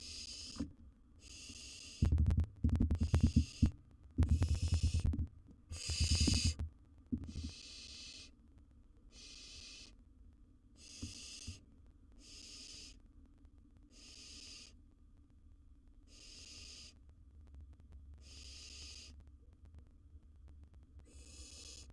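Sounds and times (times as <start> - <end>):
owl chick hissing calls: 0.0 - 0.6, 1.2 - 2.1, 5.7 - 6.6, 7.3 - 8.4, 9.1 - 10.0, 10.8 - 11.6, 12.2 - 13.0, 13.9 - 14.8, 16.1 - 17.0, 18.2 - 19.2, 21.1 - 21.9.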